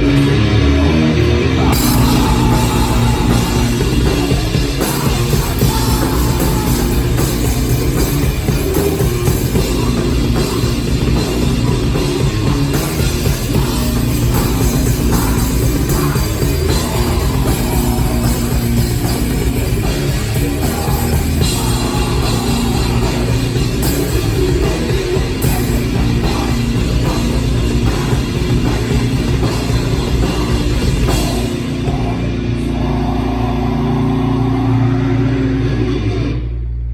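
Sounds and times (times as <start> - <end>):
rock band playing live: 0.0 - 36.7.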